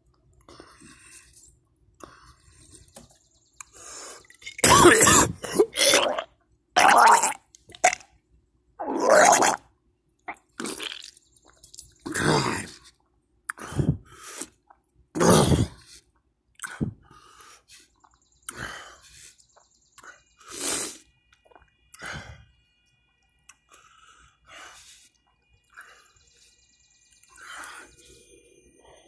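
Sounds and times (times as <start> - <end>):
breathing: 0.5 - 3.0, 13.6 - 14.6, 15.8 - 21.0, 22.0 - 22.5, 23.7 - 29.0
person coughing harshly: 4.6 - 6.2.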